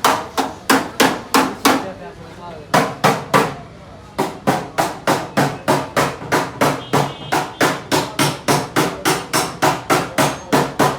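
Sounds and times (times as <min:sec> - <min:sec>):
rapid hammer blows: 0:04.2 - 0:10.9.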